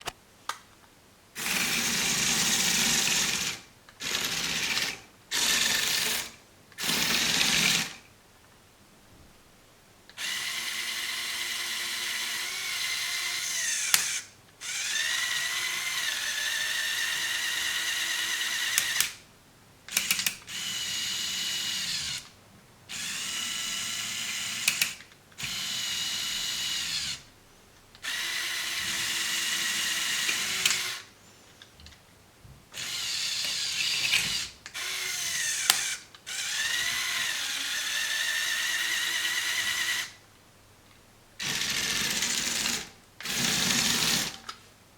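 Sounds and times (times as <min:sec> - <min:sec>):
toy motors whirring through gears: 0:10.2 - 0:19.2, 0:19.9 - 0:22.3, 0:22.9 - 0:27.3, 0:28.0 - 0:31.1, 0:32.8 - 0:40.2, 0:41.4 - 0:44.4.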